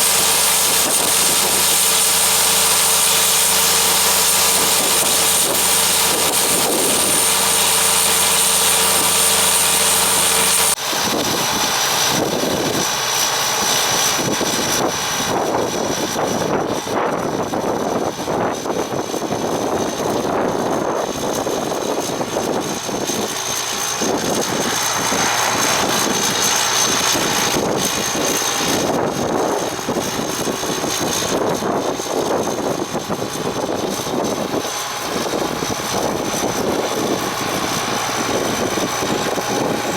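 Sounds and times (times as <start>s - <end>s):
combine harvester running: 0.0s - 39.9s
high-pitched machine whine: 0.0s - 39.9s.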